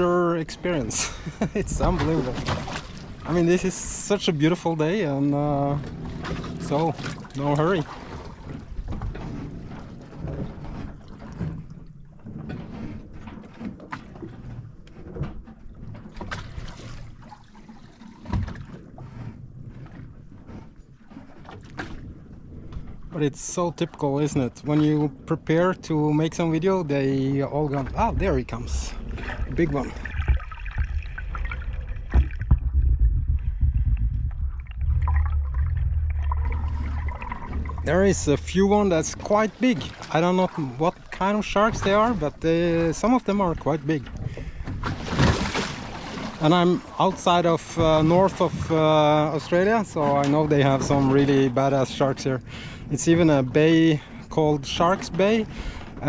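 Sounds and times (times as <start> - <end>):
water lapping against boat: 0.0 - 56.0
low rumble: 27.7 - 40.6
heavy thump: 32.1 - 39.3.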